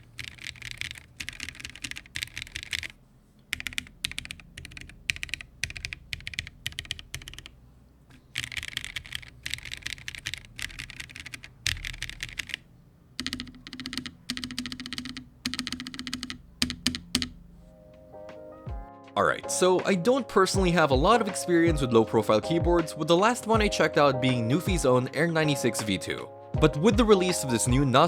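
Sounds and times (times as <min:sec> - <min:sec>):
mechanical keyboard typing: 0:00.0 - 0:17.4.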